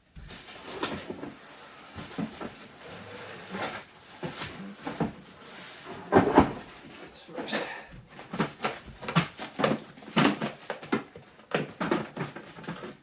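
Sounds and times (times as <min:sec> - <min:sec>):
cardboard and plastic packaging rustling: 0:00.0 - 0:13.0
plastic parts knocking: 0:08.2 - 0:13.0.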